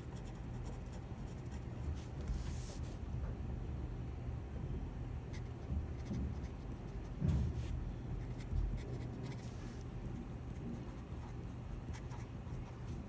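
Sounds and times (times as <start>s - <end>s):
pen scratching on paper: 8.2s - 9.6s, 10.5s - 13.0s.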